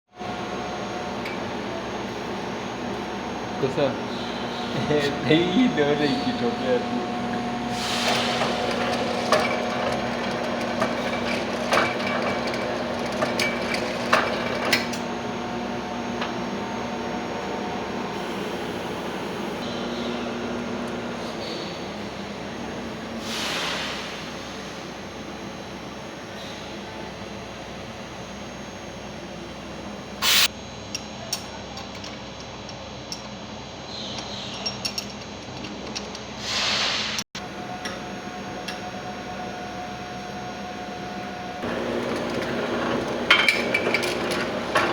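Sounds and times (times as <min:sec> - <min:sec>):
capping machine humming: 0:00.2 - 0:23.2, 0:40.9 - 0:44.9.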